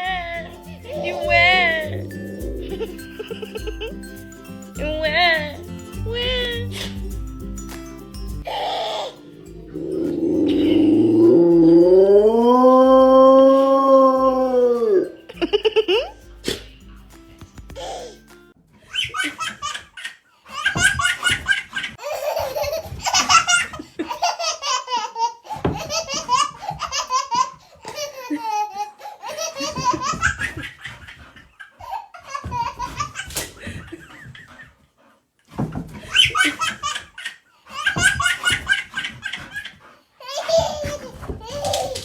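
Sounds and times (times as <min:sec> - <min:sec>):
baby laughing: 0:00.0 - 0:04.1, 0:08.5 - 0:11.5, 0:17.6 - 0:18.2, 0:18.9 - 0:34.7, 0:36.0 - 0:42.0.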